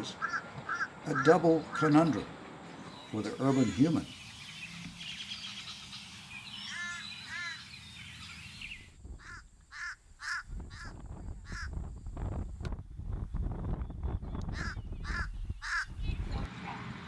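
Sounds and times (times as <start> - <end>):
crows calling: 0.0 - 11.8, 14.5 - 16.2.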